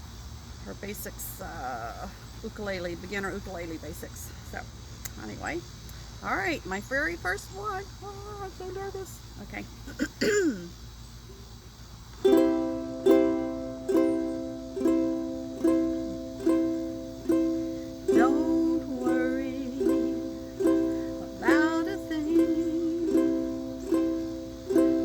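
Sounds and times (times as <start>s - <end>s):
ukulele strummed slowly: 12.2s - 25.0s.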